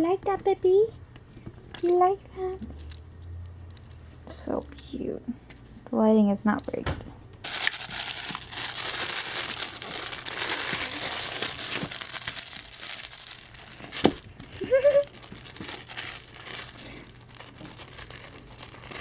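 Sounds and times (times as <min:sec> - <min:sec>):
plastic toy crinkling: 0:07.4 - 0:19.0.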